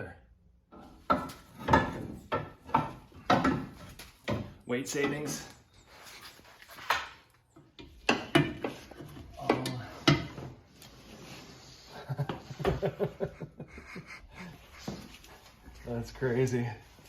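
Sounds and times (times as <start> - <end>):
tools knocking and clunking: 0.6 - 5.5, 7.5 - 10.6.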